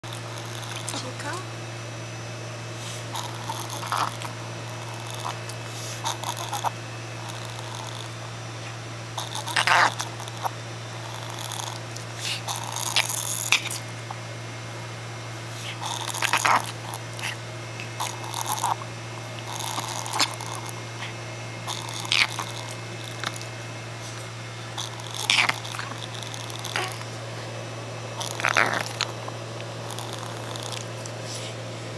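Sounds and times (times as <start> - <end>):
steady low hum: 0.0 - 31.9
dog's laboured breathing: 2.8 - 13.9, 15.4 - 27.6, 28.2 - 31.7.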